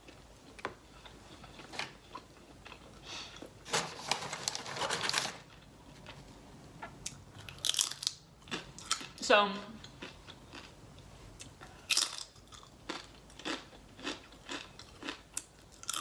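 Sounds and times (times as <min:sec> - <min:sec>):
crunching and crinkling: 0:03.6 - 0:06.2
person chewing and biting: 0:11.4 - 0:16.0.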